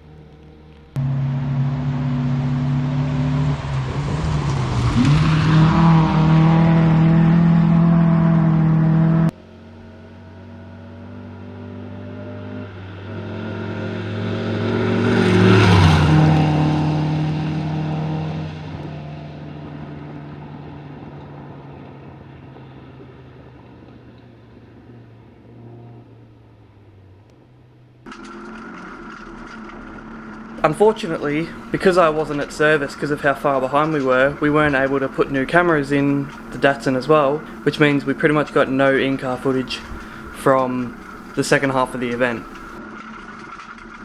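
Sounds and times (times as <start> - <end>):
rally car passing at speed: 0.0 - 27.1, 28.2 - 44.0
rally car engine revving hard: 1.0 - 9.4, 10.0 - 21.2, 30.6 - 42.8.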